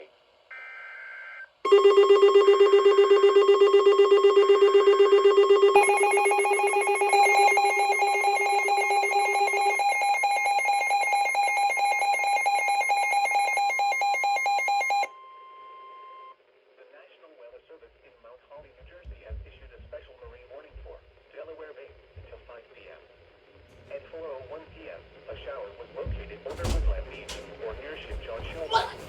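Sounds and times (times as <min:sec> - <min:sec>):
warbling multi-tone alert: 0:01.7 - 0:15.1
two-tone data burst: 0:05.3 - 0:15.1.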